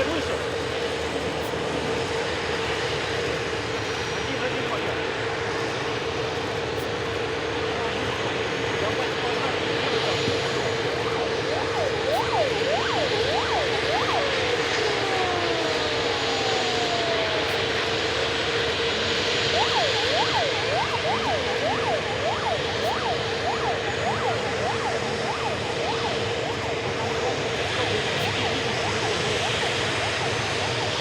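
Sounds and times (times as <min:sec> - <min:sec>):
aircraft engine whine: 0:00.0 - 0:31.0
emergency siren yelping: 0:00.0 - 0:31.0.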